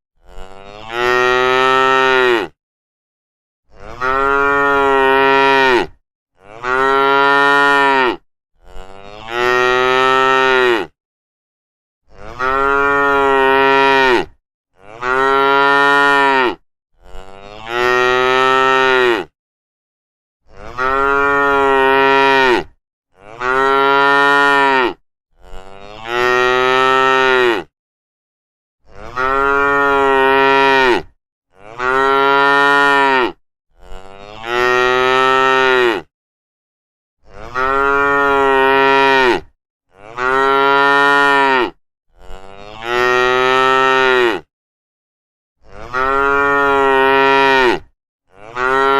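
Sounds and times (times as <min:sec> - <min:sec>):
cattle mooing: 0:00.2 - 0:02.6, 0:03.8 - 0:10.9, 0:12.1 - 0:19.3, 0:20.6 - 0:27.7, 0:29.0 - 0:36.1, 0:37.3 - 0:44.5, 0:45.6 - 0:48.9.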